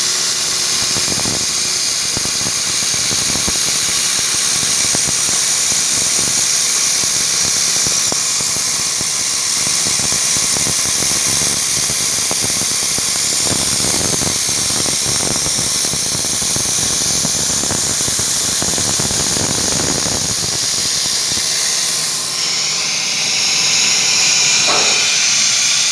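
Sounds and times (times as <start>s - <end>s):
milling machine whine: 0.0s - 25.9s
rough cutting noise: 19.3s - 25.9s.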